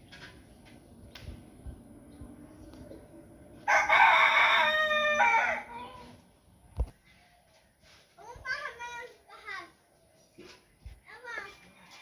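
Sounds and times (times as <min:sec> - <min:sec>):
rooster crowing: 0:03.6 - 0:05.8.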